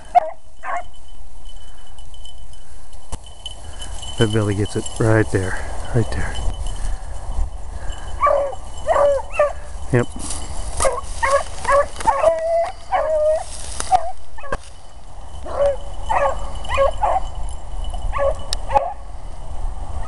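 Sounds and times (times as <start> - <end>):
dogs baying and yelping: 0.0 - 2.7, 6.8 - 9.9, 10.6 - 14.7, 15.3 - 19.1.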